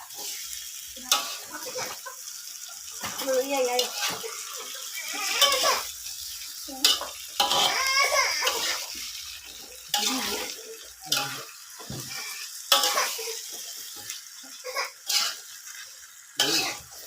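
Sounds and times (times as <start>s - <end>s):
pots and utensils knocking: 6.9s - 8.8s.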